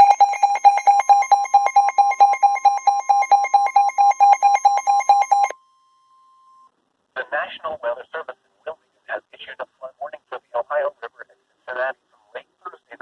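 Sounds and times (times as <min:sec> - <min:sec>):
rapid electronic alarm beeping: 0:00.0 - 0:05.5
steady warning tone: 0:00.0 - 0:05.5.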